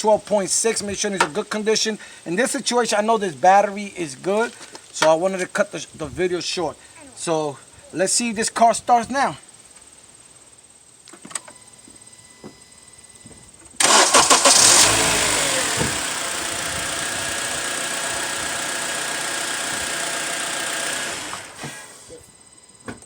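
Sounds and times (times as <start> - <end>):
car engine starting and idling: 13.8 - 22.2.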